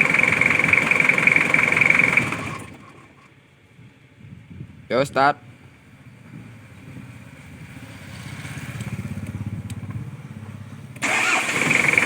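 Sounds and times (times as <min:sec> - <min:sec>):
car engine running with whine: 0:00.0 - 0:03.3, 0:09.1 - 0:12.0
car starter cranking: 0:11.0 - 0:12.0.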